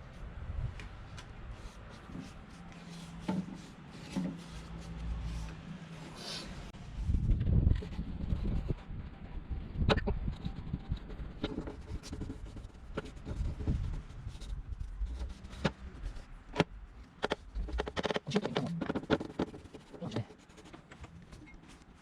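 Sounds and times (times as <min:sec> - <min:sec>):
paintbrush scraping over wood: 0:01.5 - 0:07.2.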